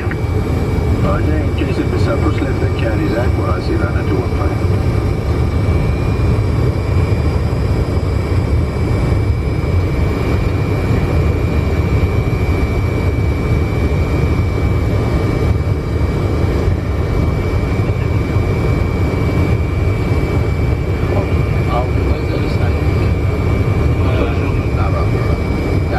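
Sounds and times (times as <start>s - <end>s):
low engine rumble: 0.0s - 12.2s
thin steady whine: 0.0s - 25.9s.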